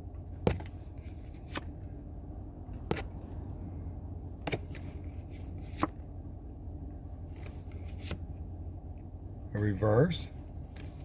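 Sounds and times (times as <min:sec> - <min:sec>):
low steady hum: 0:00.0 - 0:11.0
cards being flipped: 0:00.5 - 0:01.7, 0:04.5 - 0:06.0, 0:07.4 - 0:08.2.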